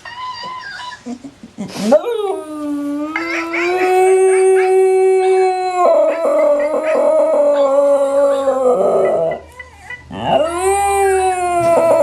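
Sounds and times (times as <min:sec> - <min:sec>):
dog howling: 0:01.9 - 0:09.5, 0:10.1 - 0:12.0.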